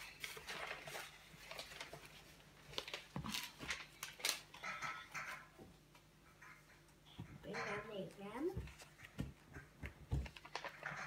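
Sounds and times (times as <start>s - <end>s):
small objects clicking and knocking: 9.0s - 11.0s.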